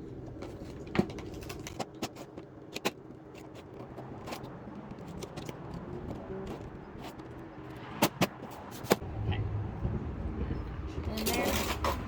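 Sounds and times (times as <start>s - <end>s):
plastic parts clicking and knocking: 0.4s - 7.3s.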